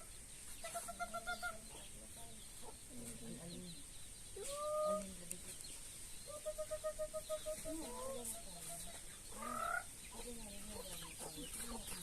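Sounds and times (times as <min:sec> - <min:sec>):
chickens clucking: 0:00.0 - 0:12.0.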